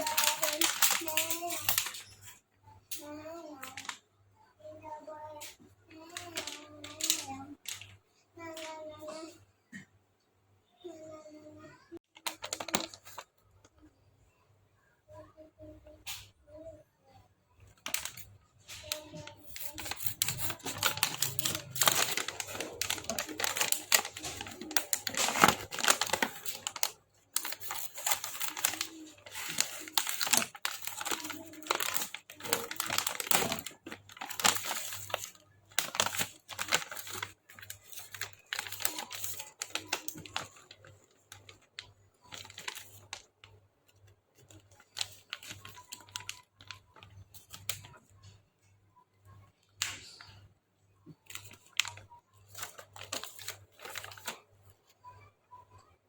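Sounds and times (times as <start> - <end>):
material crinkling and rustling: 0.0 - 2.2, 12.1 - 13.4, 17.7 - 43.5, 44.3 - 48.2, 51.1 - 54.5.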